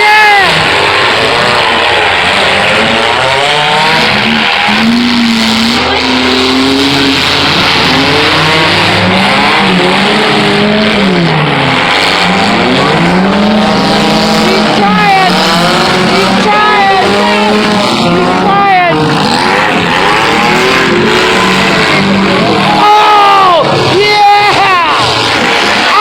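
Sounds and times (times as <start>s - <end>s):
car engines revving hard: 0.0s - 26.0s.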